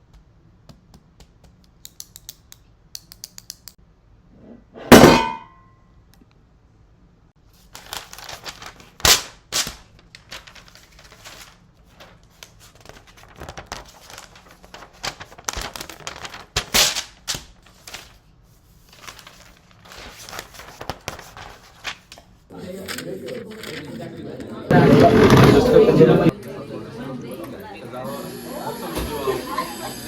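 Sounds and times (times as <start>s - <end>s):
loud metallic clang: 4.8s - 5.6s.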